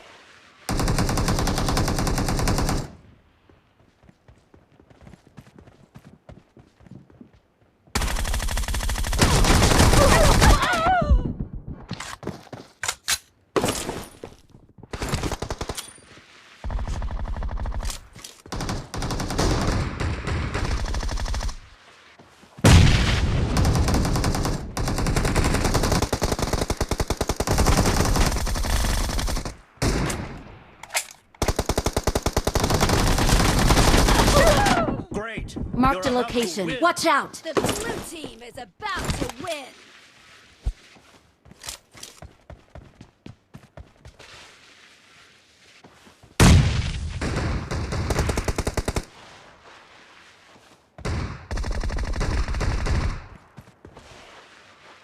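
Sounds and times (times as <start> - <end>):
video game automatic gunfire: 8.0 - 10.5, 23.6 - 29.6, 31.4 - 34.6.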